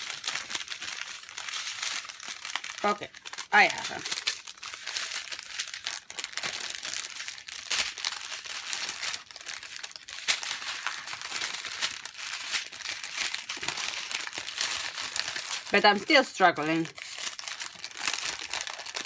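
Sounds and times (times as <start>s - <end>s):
plastic bags crinkling: 0.0s - 19.0s.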